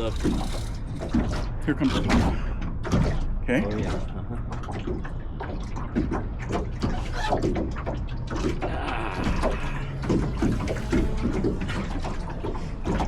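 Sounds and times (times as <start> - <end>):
low steady rumble: 0.0 - 13.0
water lapping against a hull: 0.0 - 13.0.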